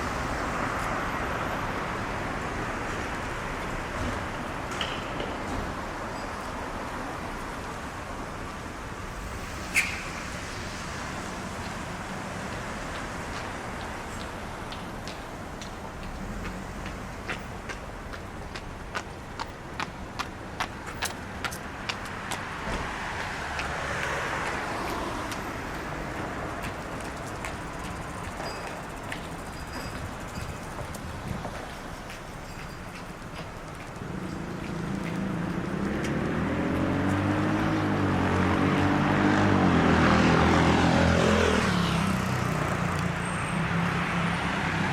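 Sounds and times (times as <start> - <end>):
road traffic noise: 0.0 - 44.9
vehicle passing: 8.8 - 13.8
short sharp sound: 9.2 - 11.4.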